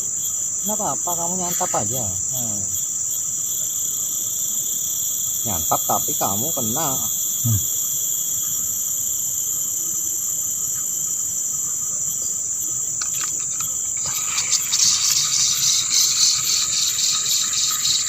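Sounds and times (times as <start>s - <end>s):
insects buzzing in chorus: 0.0s - 18.0s
rushing hiss with flutter: 12.9s - 18.0s.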